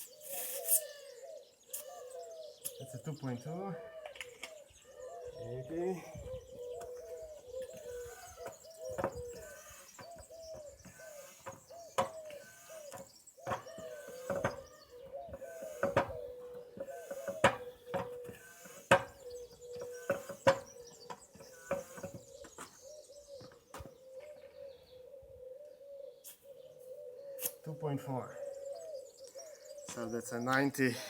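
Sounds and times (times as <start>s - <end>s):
foot pump knocking: 8.4s - 14.7s, 15.3s - 22.3s.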